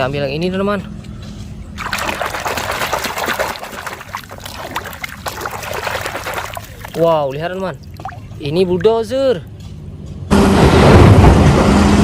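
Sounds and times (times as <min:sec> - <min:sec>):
water running and splashing: 0:01.8 - 0:09.1.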